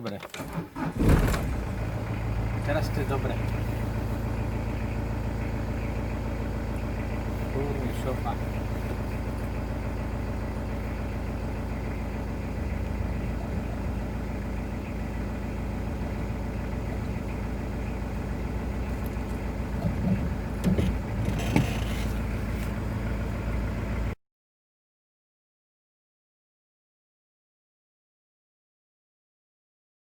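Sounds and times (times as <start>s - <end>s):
diesel engine idling: 0.4s - 24.2s.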